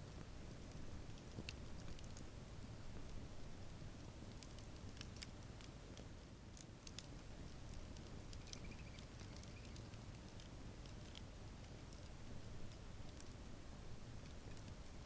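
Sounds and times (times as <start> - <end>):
campfire crackling: 0.0 - 15.0.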